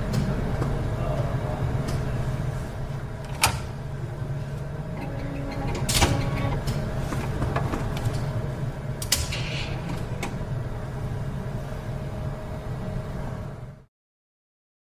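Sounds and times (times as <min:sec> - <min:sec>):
machine mechanism whirring: 0:04.9 - 0:10.5
mechanical clicks and clack: 0:05.0 - 0:08.3.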